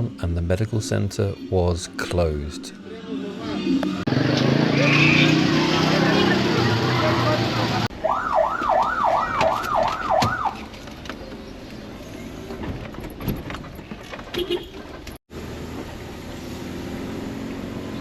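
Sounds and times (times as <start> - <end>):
vehicle noise: 0.0 - 18.0
emergency vehicle siren wailing: 4.7 - 10.7.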